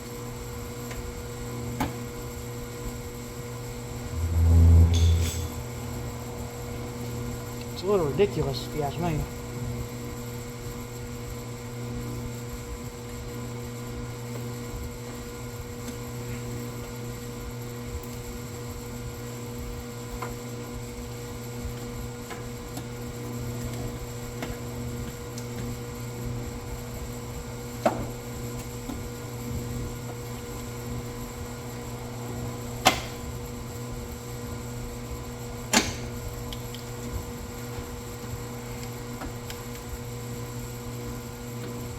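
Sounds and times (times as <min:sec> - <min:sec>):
steady electrical hum: 0:00.0 - 0:12.5.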